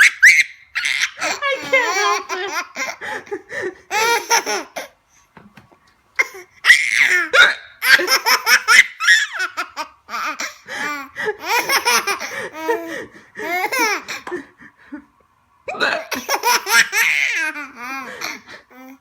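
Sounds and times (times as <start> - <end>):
baby laughing: 0.0 - 5.0, 6.2 - 14.5, 16.0 - 19.0.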